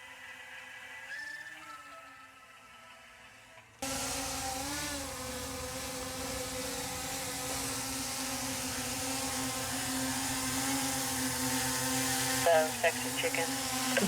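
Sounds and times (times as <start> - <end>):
drone propellers buzzing: 3.8 - 14.0.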